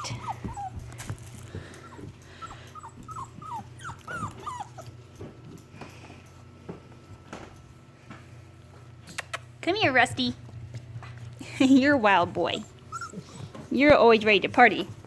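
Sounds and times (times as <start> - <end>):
puppies whimpering: 0.0 - 5.2, 11.4 - 13.9.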